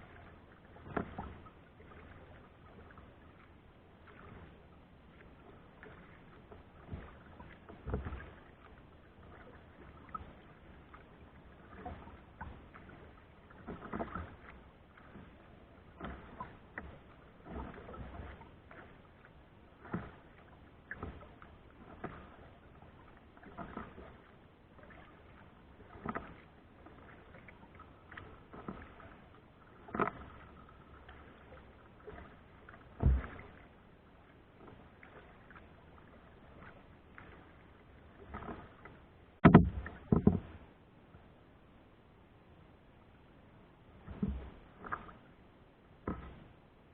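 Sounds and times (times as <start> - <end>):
paddle splashing in water: 0.0 - 41.4, 43.8 - 46.9
low thud: 39.4 - 40.5.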